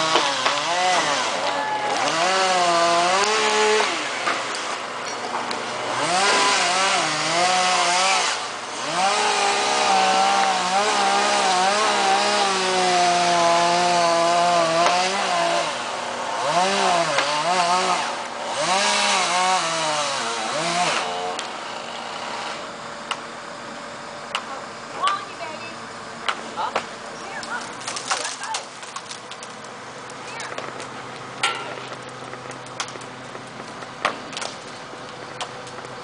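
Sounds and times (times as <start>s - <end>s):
chainsaw cutting wood: 0.0s - 23.2s.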